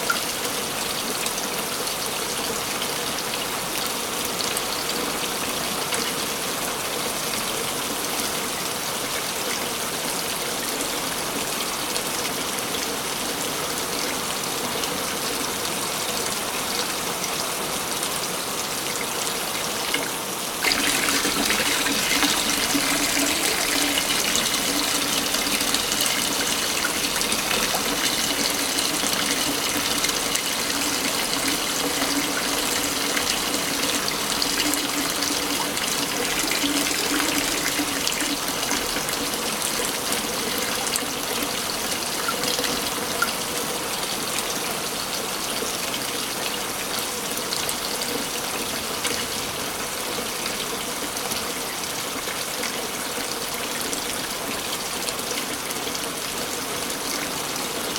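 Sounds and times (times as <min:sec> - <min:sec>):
waterfall rushing: 0:20.4 - 0:42.1.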